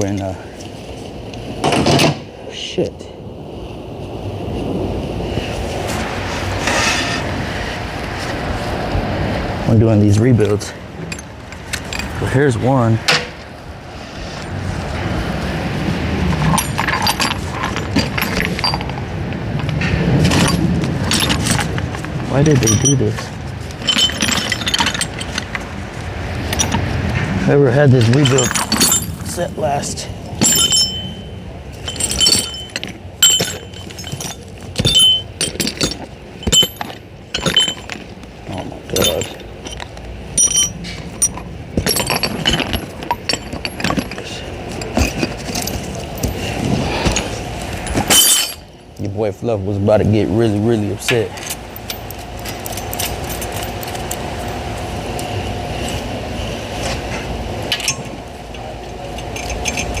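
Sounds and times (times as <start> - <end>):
low shop hum: 0.0 - 60.0
metal tools clinking and knocking: 10.4 - 12.2, 16.4 - 19.0, 19.6 - 25.8, 26.4 - 26.9, 27.8 - 46.4, 47.0 - 48.7, 51.0 - 54.6, 57.7 - 60.0.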